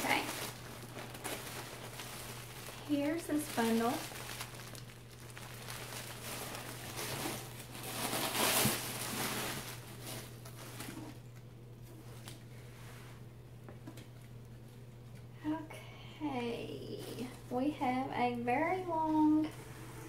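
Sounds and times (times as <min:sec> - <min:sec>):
clothing rustling and crinkling: 0:00.0 - 0:15.4
low electrical hum: 0:00.0 - 0:20.0.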